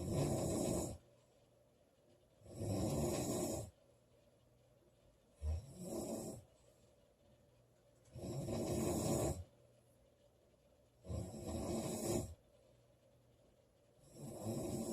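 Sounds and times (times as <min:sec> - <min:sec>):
woman snoring loudly: 0:00.0 - 0:01.0, 0:02.5 - 0:03.7, 0:08.2 - 0:09.4, 0:11.1 - 0:12.4, 0:14.1 - 0:14.9
quiet breathing: 0:00.0 - 0:04.4, 0:05.2 - 0:07.4, 0:08.0 - 0:10.3, 0:10.9 - 0:13.2, 0:13.8 - 0:14.9.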